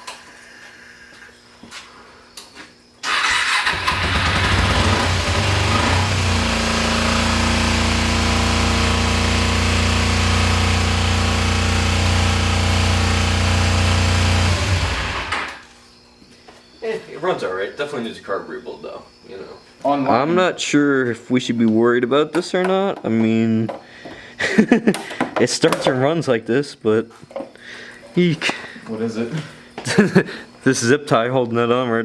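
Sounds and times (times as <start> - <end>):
motorcycle engine starting and running: 3.1 - 15.7.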